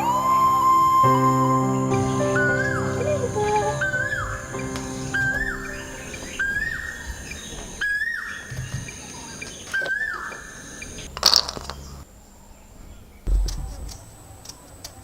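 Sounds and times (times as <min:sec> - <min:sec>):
bird whistled call: 0:00.0 - 0:08.4
loud rustling: 0:03.2 - 0:08.0.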